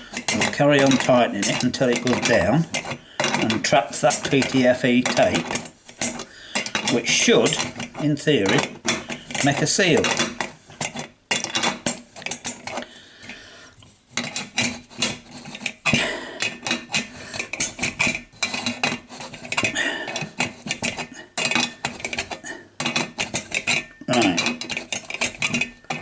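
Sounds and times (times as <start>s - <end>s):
metallic clinks taps and scrapes: 0.0s - 26.0s.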